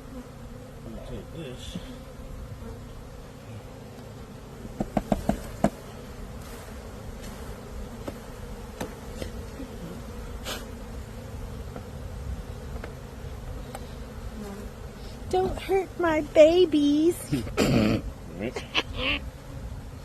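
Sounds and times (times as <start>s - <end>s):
bee swarm buzzing: 0.0s - 20.0s
sharp knocks: 4.8s - 5.8s
short hiss: 10.4s - 10.7s.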